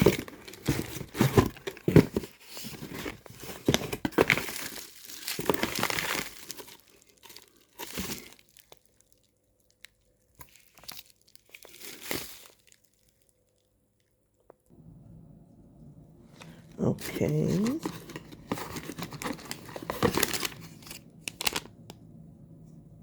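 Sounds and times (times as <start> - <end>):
packaging crinkling and tearing: 0.0 - 13.7, 17.0 - 21.8.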